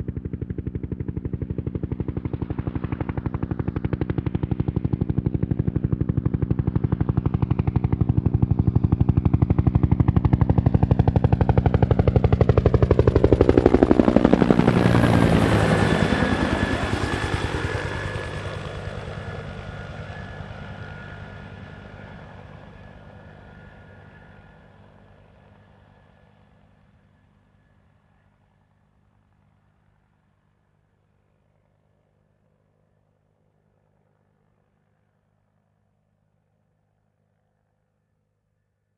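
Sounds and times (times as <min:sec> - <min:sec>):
helicopter whine: 0:00.0 - 0:28.3
helicopter rotor beating: 0:00.2 - 0:25.5.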